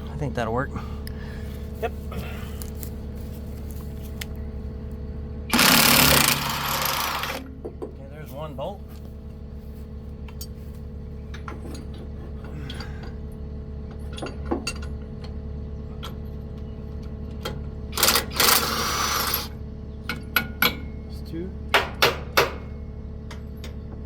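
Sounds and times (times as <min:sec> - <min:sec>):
low machine hum: 0:00.0 - 0:24.0
impact wrench rattling: 0:05.5 - 0:07.5.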